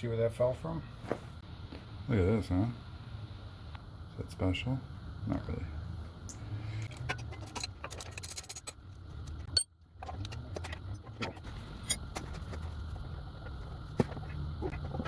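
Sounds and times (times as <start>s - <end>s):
steady low hum: 0.0s - 15.0s
metal tools clinking: 6.8s - 10.8s.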